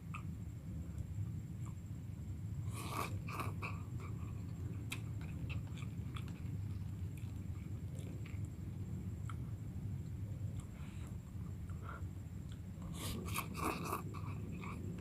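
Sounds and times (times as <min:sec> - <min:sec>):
steady low hum: 0:00.0 - 0:15.0
person chewing noodles: 0:02.7 - 0:08.5, 0:12.4 - 0:15.0.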